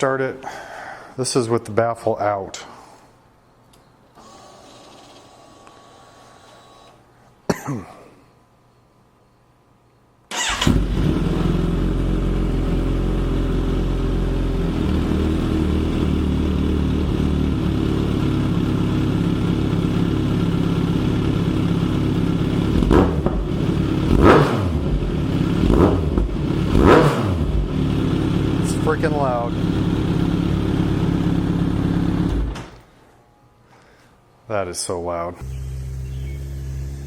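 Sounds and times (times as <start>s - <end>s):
loud motorcycle engine idling: 11.6s - 32.5s
motorcycle throttle blips: 22.1s - 28.6s, 35.4s - 37.0s.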